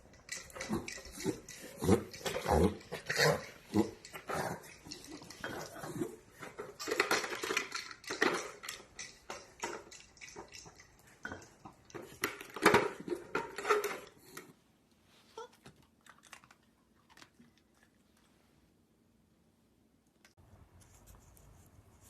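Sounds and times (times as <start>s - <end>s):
hard objects clinking and clattering: 0.0s - 14.5s.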